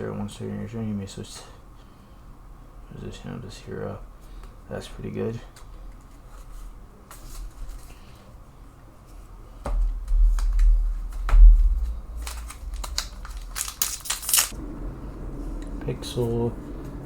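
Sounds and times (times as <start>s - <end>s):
dull low bumps: 9.7s - 13.6s
trading cards rustling and clicking: 11.8s - 14.6s.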